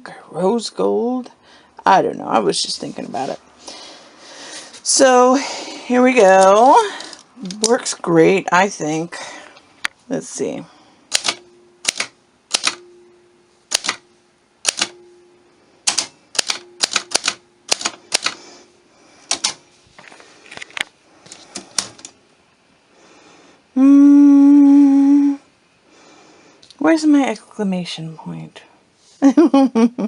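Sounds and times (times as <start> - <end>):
typewriter keystrikes: 11.1 - 12.8, 13.7 - 14.0, 14.6 - 15.0, 15.8 - 18.4, 19.3 - 19.6, 21.6 - 22.1
person humming: 23.7 - 25.5, 29.4 - 30.0.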